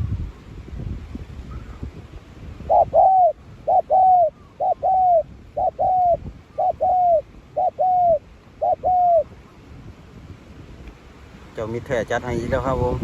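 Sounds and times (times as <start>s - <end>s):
dove cooing: 2.6s - 9.4s.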